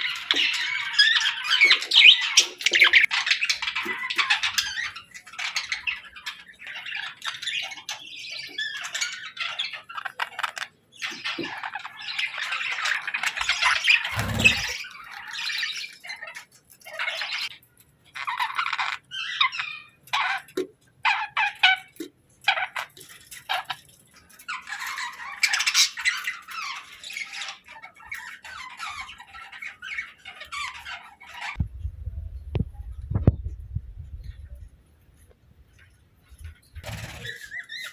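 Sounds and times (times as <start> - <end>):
budgerigars chirping and chattering: 0.0 - 17.6, 24.2 - 31.6, 36.4 - 37.9.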